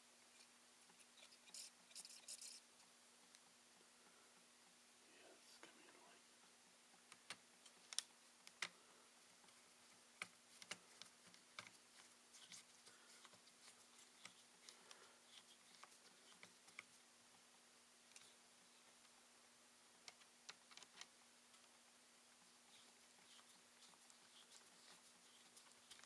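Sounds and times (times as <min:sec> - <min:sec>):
laptop parts clicking and tapping: 0:10.2 - 0:11.8, 0:20.0 - 0:21.1.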